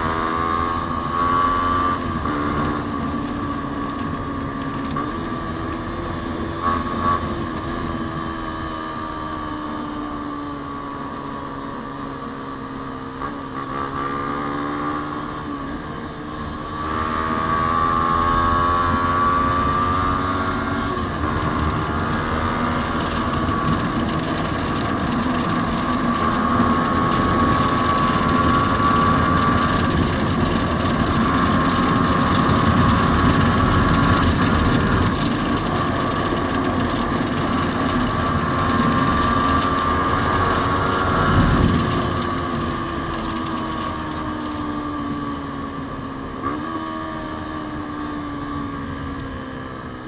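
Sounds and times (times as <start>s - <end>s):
motorcycle engine running: 0.0s - 50.0s
low wind rumble: 15.4s - 50.0s.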